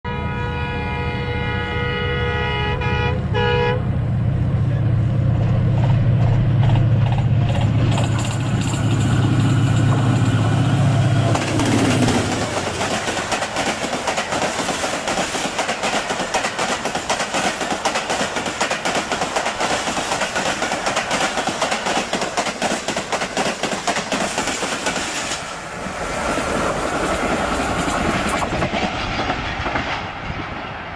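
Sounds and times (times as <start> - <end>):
train horn: 0.0 - 3.9
locomotive low rumble: 2.7 - 12.8
train carriages clattering past: 4.0 - 30.9.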